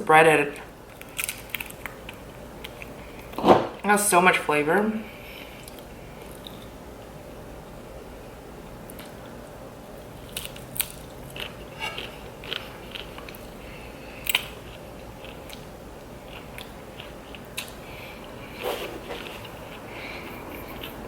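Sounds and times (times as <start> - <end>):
crunchy chewing: 0.9 - 3.4, 8.8 - 21.0.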